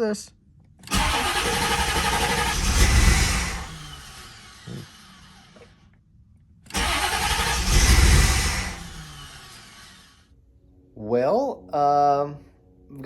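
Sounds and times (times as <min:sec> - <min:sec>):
car engine cranking: 0:00.8 - 0:05.8, 0:06.7 - 0:10.2.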